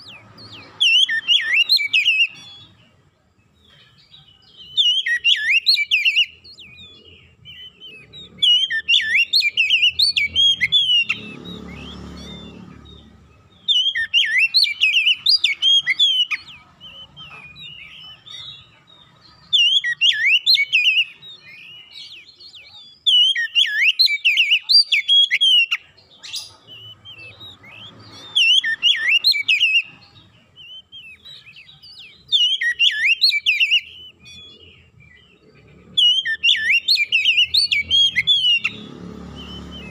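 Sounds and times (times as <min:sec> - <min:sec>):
bird singing whistled phrases: 0:00.0 - 0:03.0, 0:03.7 - 0:18.8, 0:19.4 - 0:39.9.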